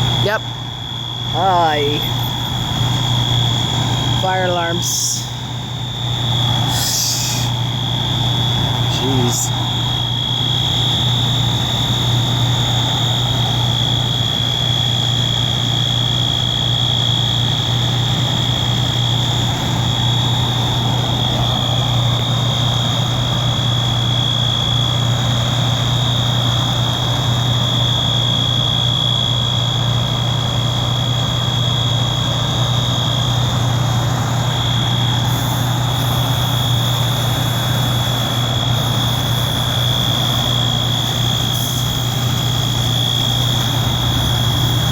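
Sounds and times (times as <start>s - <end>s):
fire alarm high-pitched tone: 0.0s - 16.8s, 34.6s - 44.9s
idling diesel engine drone: 0.0s - 44.9s.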